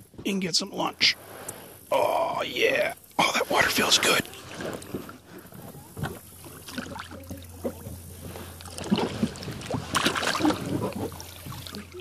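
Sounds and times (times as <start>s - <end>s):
water splashing: 3.1s - 12.0s
kayak knocking and scraping: 3.6s - 12.0s.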